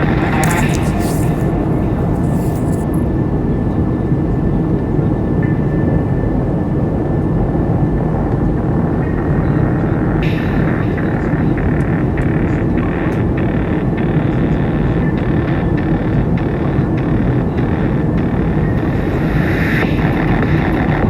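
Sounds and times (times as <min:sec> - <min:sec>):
faint thin whine: 0:00.0 - 0:03.1.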